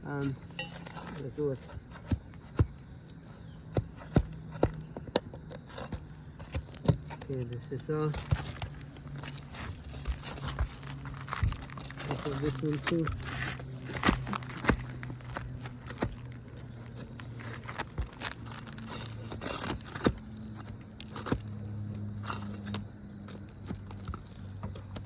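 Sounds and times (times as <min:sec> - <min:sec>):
steady low hum: 0:00.0 - 0:25.0
metal tool scraping shingles: 0:00.1 - 0:02.6, 0:05.7 - 0:22.9.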